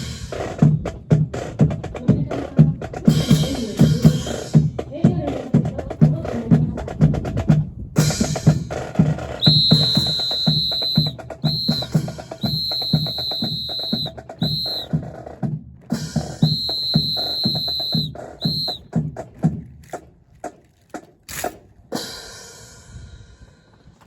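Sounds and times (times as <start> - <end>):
drums beating a march rhythm: 0.0 - 22.8
whistle blown: 9.4 - 15.0, 16.4 - 18.9.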